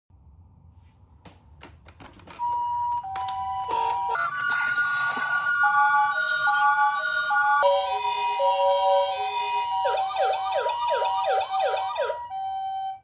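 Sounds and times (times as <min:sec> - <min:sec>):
toy two-tone siren: 0:02.6 - 0:13.0
steady higher tones: 0:04.2 - 0:12.4.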